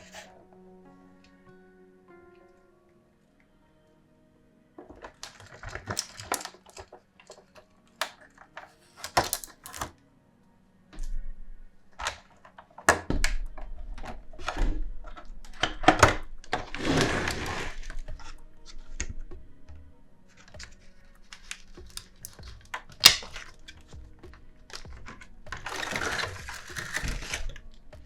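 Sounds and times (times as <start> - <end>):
rustling scrape: 0.0 - 0.4, 16.5 - 18.9, 24.7 - 28.0
handling clicks and knocks: 4.8 - 9.9, 20.4 - 28.0.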